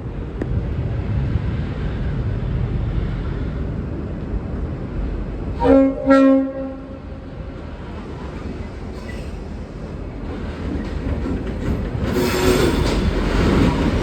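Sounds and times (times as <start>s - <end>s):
locomotive horn blasts: 5.6s - 7.3s.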